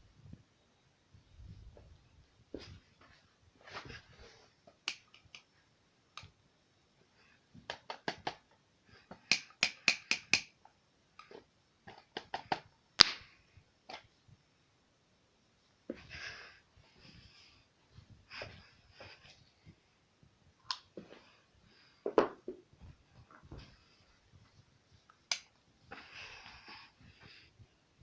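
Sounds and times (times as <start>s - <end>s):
sharp clicks and taps: 4.7s - 5.5s, 7.6s - 8.5s, 9.1s - 10.6s, 11.9s - 13.2s, 25.3s - 25.5s.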